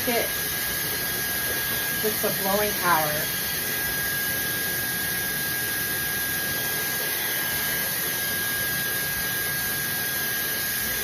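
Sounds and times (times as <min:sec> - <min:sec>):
hair dryer running: 0:00.0 - 0:11.0.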